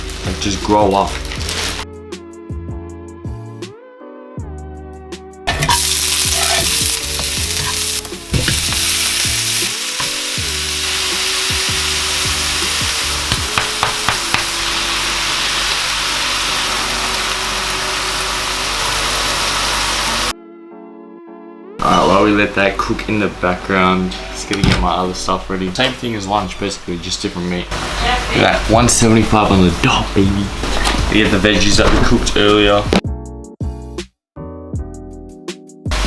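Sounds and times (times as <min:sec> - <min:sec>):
beef mince sizzling in a pan: 0:00.0 - 0:01.8, 0:05.5 - 0:20.3.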